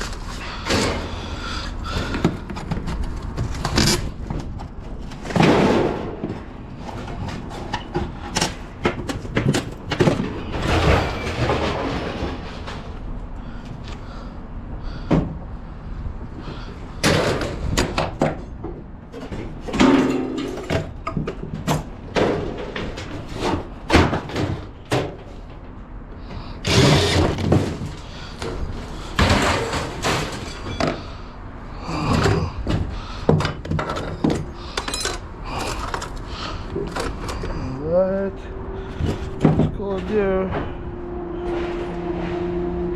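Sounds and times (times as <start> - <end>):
scrap metal clanking: 0.0 - 13.2, 19.2 - 25.8, 26.5 - 31.4, 38.8 - 42.9.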